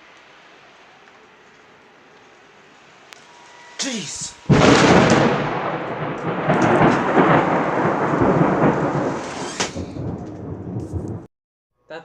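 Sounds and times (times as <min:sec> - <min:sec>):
thunder rumbling: 0:04.1 - 0:11.3
sharp thunder crack: 0:04.4 - 0:11.3.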